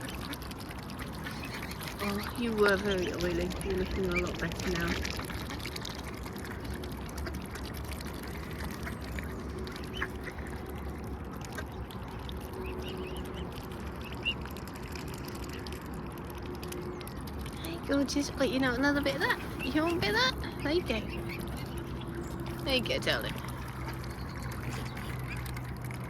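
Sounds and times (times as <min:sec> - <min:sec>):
ducks quacking: 0:00.0 - 0:15.7, 0:17.6 - 0:26.0.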